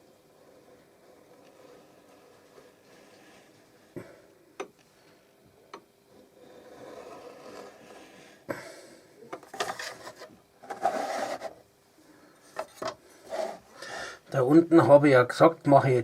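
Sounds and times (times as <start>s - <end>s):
knife rasping through leather: 6.4s - 8.2s.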